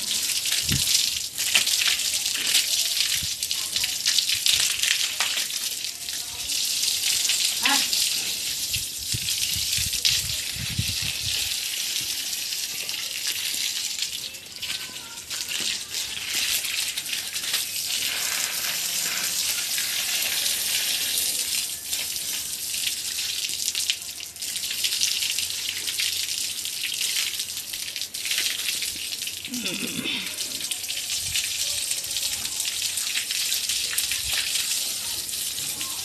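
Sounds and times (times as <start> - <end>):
water gushing and splashing: 0.0 - 22.8.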